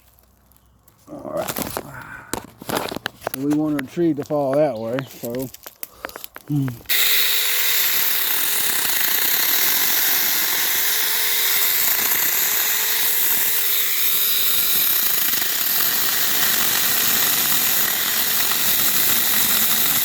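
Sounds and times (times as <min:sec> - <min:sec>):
mini chainsaw cutting wood: 0:06.8 - 0:20.0.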